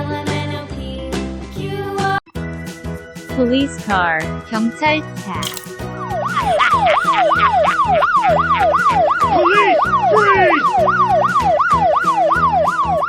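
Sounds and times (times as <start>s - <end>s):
police siren yelping: 9.9s - 13.0s.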